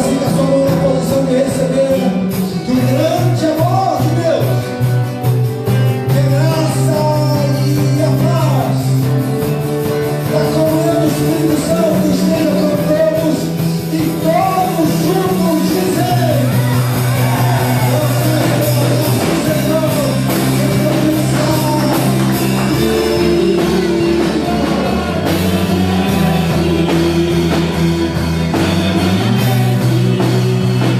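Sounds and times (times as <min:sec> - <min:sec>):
bass and chord notes: 0:00.0 - 0:30.9
person singing melody: 0:16.6 - 0:30.9.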